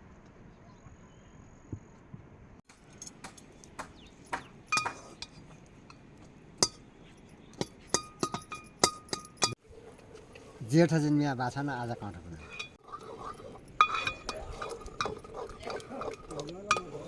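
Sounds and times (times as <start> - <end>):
dishes and utensils clinking: 4.3 - 6.0, 6.6 - 9.6, 12.4 - 17.0.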